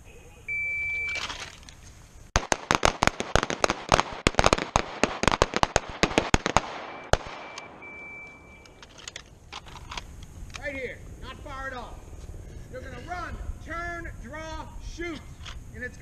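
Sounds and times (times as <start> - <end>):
shot timer beep: 0.5 - 1.2, 6.9 - 8.8.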